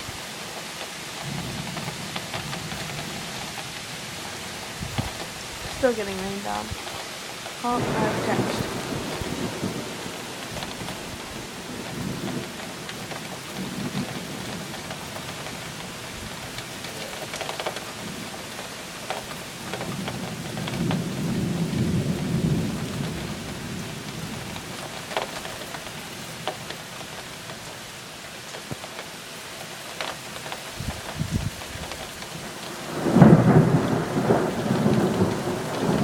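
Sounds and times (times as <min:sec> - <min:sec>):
heavy rain falling: 0:00.0 - 0:36.0
raindrops tapping close by: 0:00.0 - 0:36.0
thunder rumbling: 0:01.2 - 0:06.9, 0:07.6 - 0:18.5, 0:19.2 - 0:24.8, 0:30.8 - 0:36.0.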